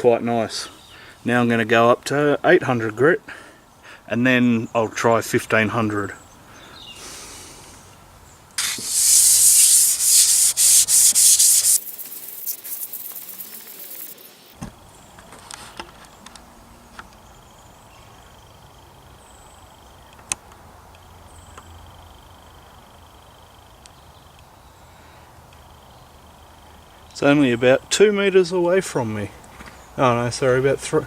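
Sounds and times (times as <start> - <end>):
stone rubbing on glass: 8.6 - 14.4.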